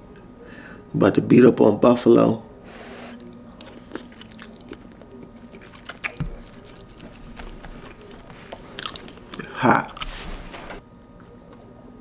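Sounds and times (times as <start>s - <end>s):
person chewing food: 3.0s - 10.7s.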